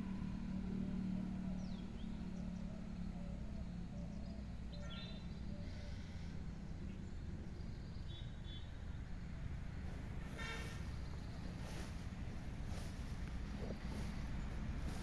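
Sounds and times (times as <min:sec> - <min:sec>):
low outdoor rumble: 0:00.0 - 0:15.0
faint bird chirps: 0:01.3 - 0:08.8.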